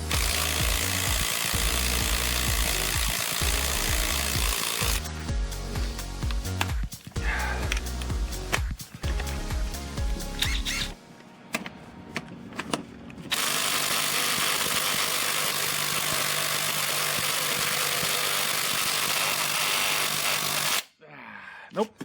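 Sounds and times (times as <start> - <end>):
impact wrench hammering: 0.0 - 5.1, 12.6 - 20.8.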